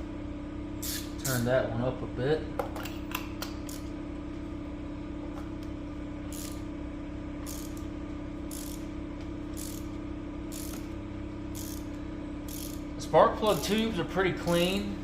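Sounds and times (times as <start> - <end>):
steady low hum: 0.0 - 15.0
hand ratchet clicking: 6.3 - 6.6, 7.4 - 7.8, 8.5 - 8.8, 9.5 - 9.9, 10.5 - 10.8, 11.6 - 11.9, 12.5 - 12.8.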